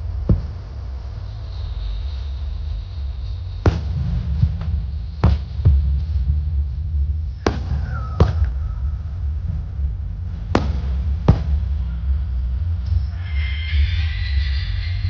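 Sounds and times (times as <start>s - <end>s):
fireworks bursting: 0.0s - 1.3s, 3.6s - 6.0s, 7.4s - 9.2s, 10.3s - 11.8s
low rumble: 0.0s - 15.0s
music: 0.0s - 15.0s.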